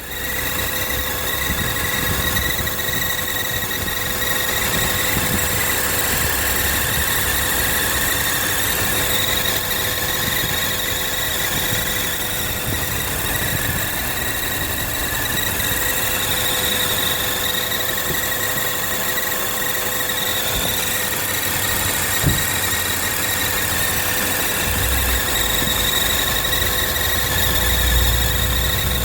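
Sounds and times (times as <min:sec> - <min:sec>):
high-pitched whine: 0:00.0 - 0:29.0
car engine running: 0:20.5 - 0:29.0.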